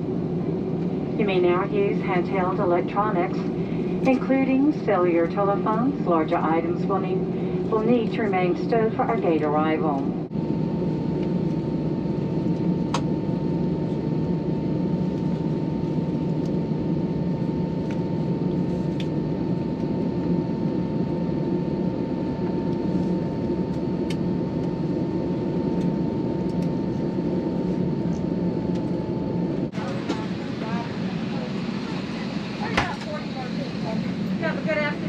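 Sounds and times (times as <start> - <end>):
airplane cabin engine rumble: 0.0 - 35.0
thin steady whine: 0.0 - 35.0.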